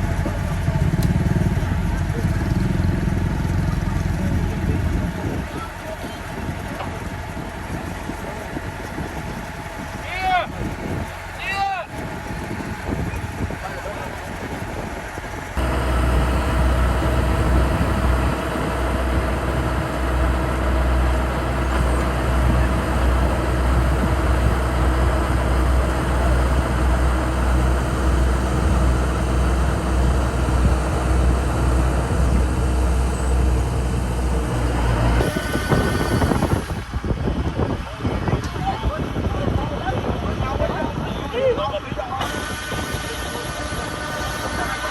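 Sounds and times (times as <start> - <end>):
combine harvester diesel engine: 0.0 - 44.9.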